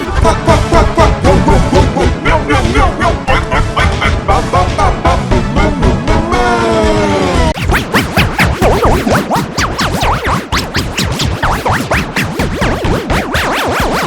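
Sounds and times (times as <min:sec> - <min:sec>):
electronic cartoon pitch sweeps: 0:07.6 - 0:14.0.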